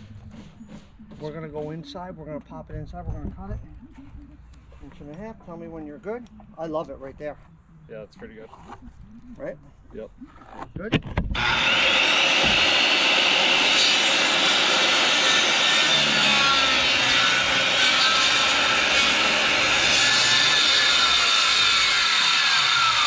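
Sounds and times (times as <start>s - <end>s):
power saw cutting board: 11.4s - 23.0s.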